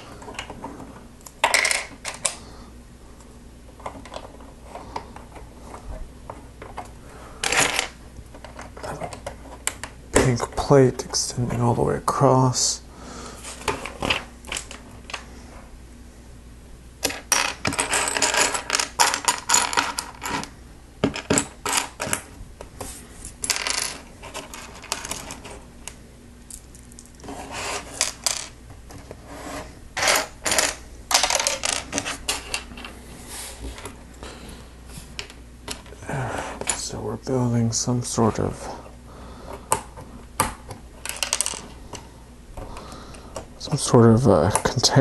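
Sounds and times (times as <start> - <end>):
plastic toy bricks clattering: 30.0 - 32.8, 41.0 - 41.7.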